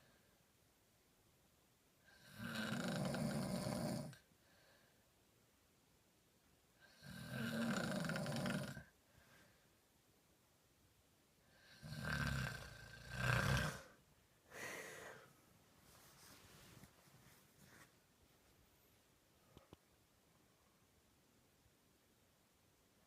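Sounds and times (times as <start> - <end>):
person snoring: 2.1 - 4.2, 6.8 - 8.9, 11.6 - 15.3.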